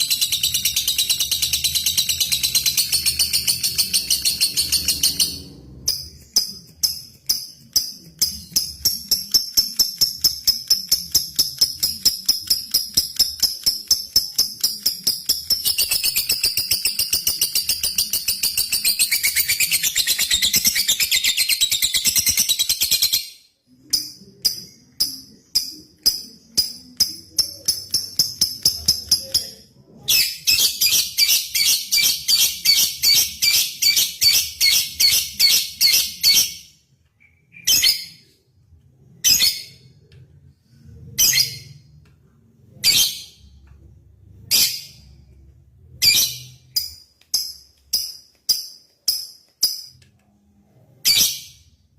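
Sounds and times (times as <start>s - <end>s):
sharp bird ticking calls: 0.0s - 5.4s.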